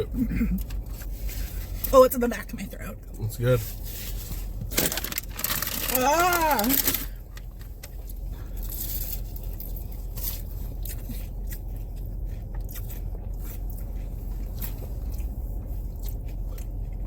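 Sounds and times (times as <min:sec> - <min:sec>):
person chewing crunchy food: 0:04.6 - 0:17.0.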